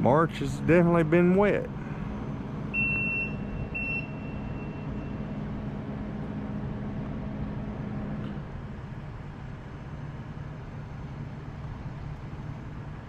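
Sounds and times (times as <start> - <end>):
vehicle engine running: 0.0 - 13.0
high electronic beeps: 2.8 - 5.2.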